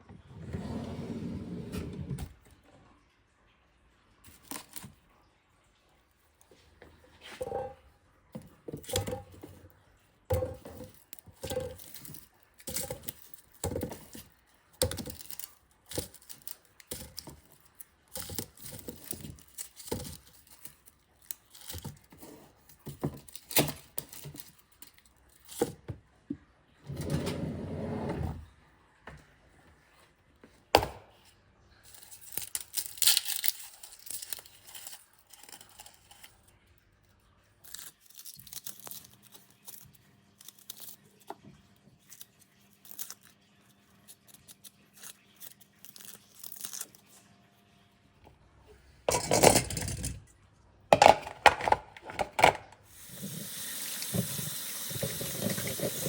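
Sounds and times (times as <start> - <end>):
onion skin tearing and crinkling: 10.8 - 22.1, 31.9 - 36.5, 37.5 - 41.4, 42.0 - 47.2.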